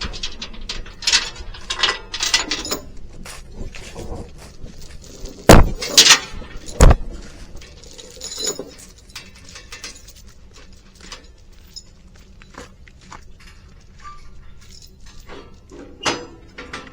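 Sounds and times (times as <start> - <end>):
loud bangs: 5.5 - 7.0.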